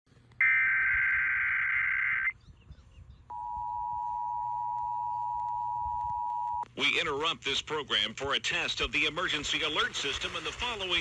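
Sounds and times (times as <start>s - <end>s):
warbling data screech: 0.4s - 2.3s
two-tone attention signal: 3.3s - 6.6s.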